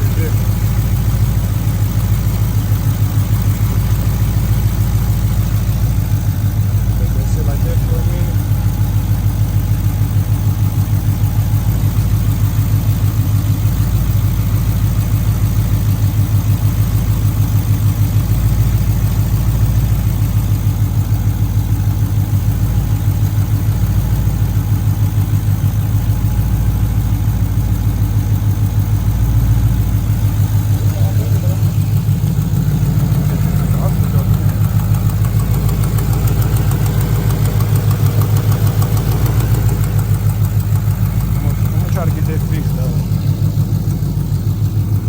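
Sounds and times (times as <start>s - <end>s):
car engine idling: 0.0s - 45.0s.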